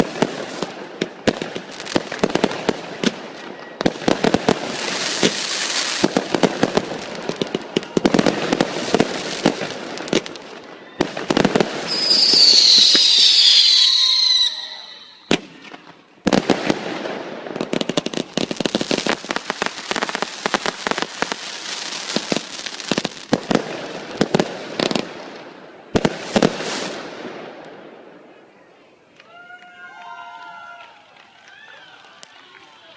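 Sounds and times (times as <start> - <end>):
fireworks crackling and popping: 0.0 - 27.9, 32.0 - 32.9
shrill falling whistle: 11.9 - 15.3.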